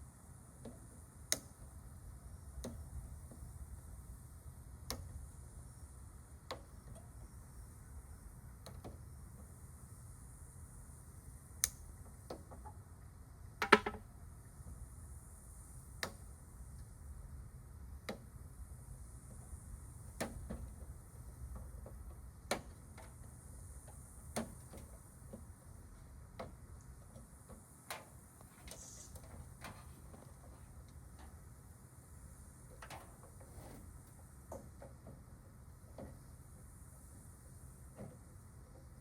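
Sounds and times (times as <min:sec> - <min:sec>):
hand tools knocking on metal: 0:13.6 - 0:14.0.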